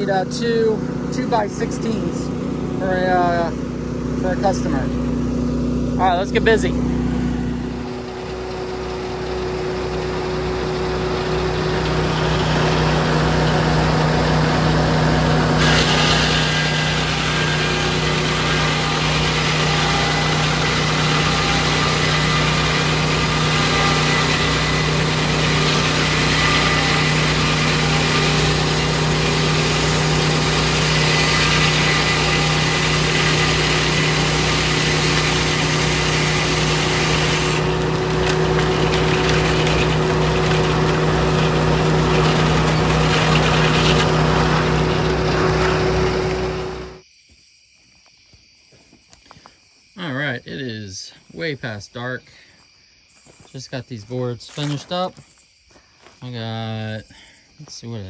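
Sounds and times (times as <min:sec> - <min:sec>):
sawmill engine running: 0:00.0 - 0:47.0
high-pitched sawing: 0:07.5 - 0:47.0.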